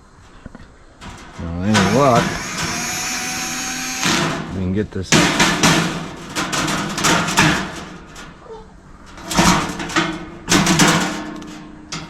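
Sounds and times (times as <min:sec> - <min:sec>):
sheet metal panels clanking: 0:01.0 - 0:12.0.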